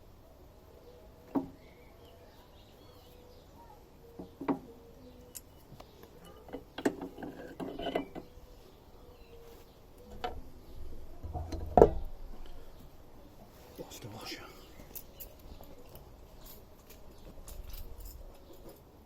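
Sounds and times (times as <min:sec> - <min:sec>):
metal tools knocking: 0:06.2 - 0:08.4.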